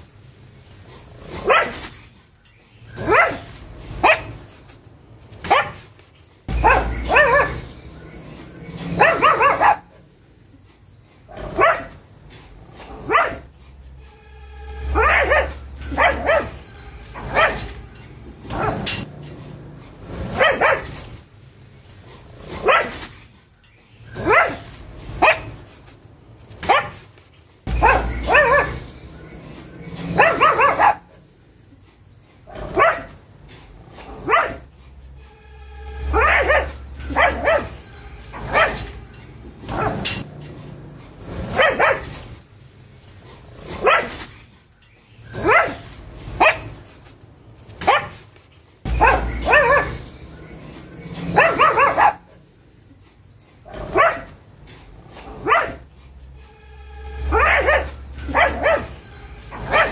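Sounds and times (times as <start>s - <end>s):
dog barking: 1.3s - 1.9s, 2.9s - 4.4s, 5.4s - 5.8s, 6.5s - 7.8s, 8.8s - 10.0s, 11.3s - 12.0s, 12.8s - 13.5s, 14.9s - 17.8s, 18.4s - 19.1s, 20.3s - 21.0s, 22.6s - 23.0s, 24.1s - 25.7s, 26.6s - 27.0s, 27.7s - 29.3s, 30.0s - 31.2s, 32.5s - 33.2s, 34.0s - 34.7s, 36.0s - 39.0s, 39.6s - 40.2s, 41.5s - 42.2s, 43.7s - 44.2s, 45.3s - 46.8s, 47.8s - 48.2s, 48.9s - 50.2s, 51.2s - 52.3s, 53.7s - 54.4s, 55.2s - 55.9s, 57.2s - 59.9s.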